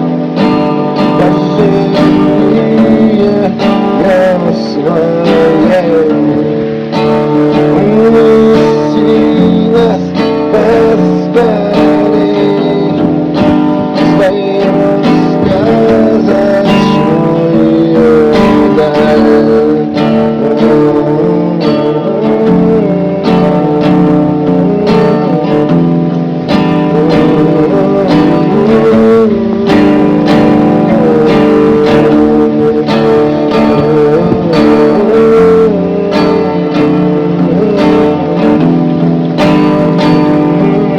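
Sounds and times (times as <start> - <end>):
person singing: 0.0 - 40.9
strummed acoustic guitar: 0.0 - 40.9.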